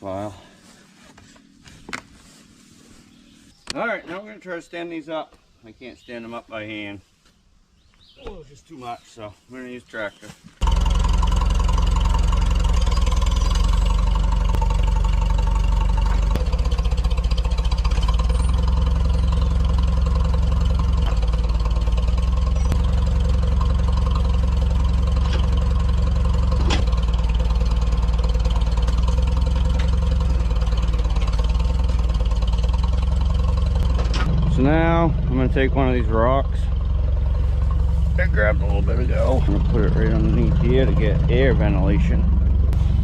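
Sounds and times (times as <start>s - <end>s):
tractor engine running: 10.6s - 43.0s.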